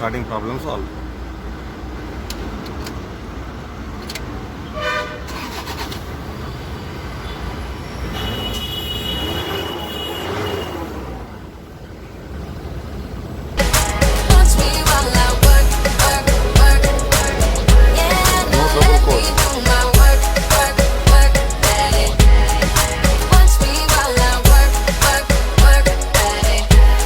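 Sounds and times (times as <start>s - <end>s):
roadside traffic: 0.0s - 27.0s
vehicle horn tooting: 4.7s - 5.6s, 8.0s - 11.0s
steady high tone: 13.6s - 27.0s.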